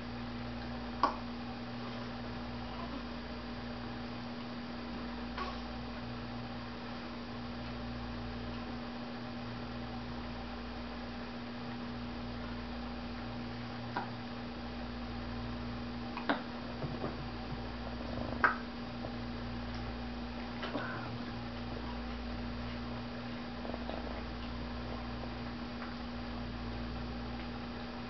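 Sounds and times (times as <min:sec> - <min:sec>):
steady electrical hum: 0:00.0 - 0:28.0
small child hiccuping: 0:05.4 - 0:05.8, 0:20.6 - 0:21.2.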